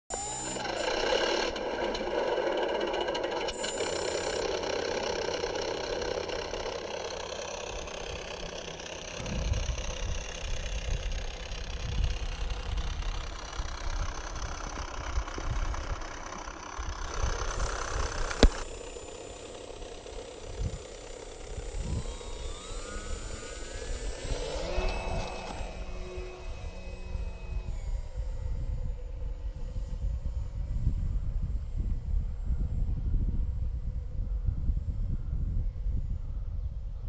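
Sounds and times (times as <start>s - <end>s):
simulated aircraft engine: 0.1s - 37.0s
sharp click: 18.2s - 18.7s.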